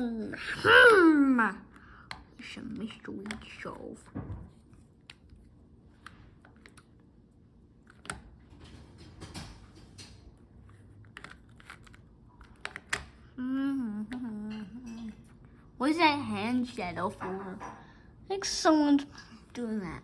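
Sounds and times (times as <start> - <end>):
plastic puzzle cube clicking: 11.0 - 13.2.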